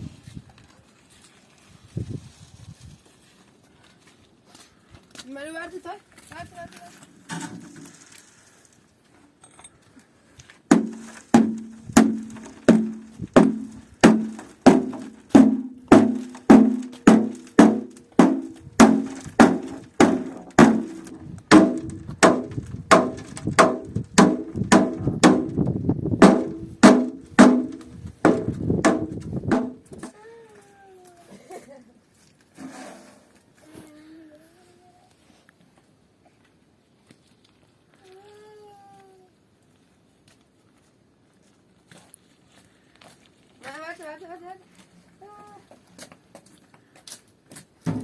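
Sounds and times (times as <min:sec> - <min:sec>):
hammer knocking on wood: 0:10.7 - 0:25.6, 0:26.2 - 0:29.8.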